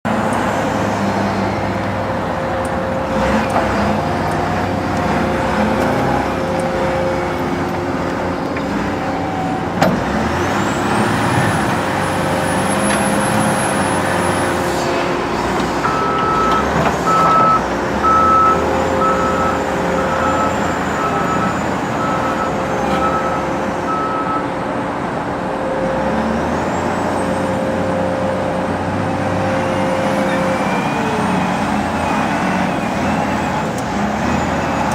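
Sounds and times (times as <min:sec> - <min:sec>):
wheel loader diesel engine: 0:00.0 - 0:34.9
backup alarm beeping: 0:15.8 - 0:24.5.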